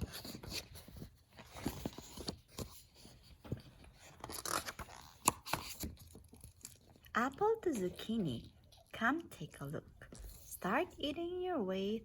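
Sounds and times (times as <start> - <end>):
paper book rustling: 0.0 - 6.8.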